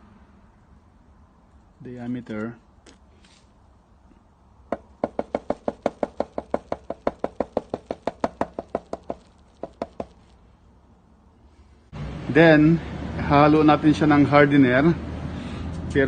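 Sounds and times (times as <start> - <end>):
rapid sharp knocks: 4.7 - 10.2.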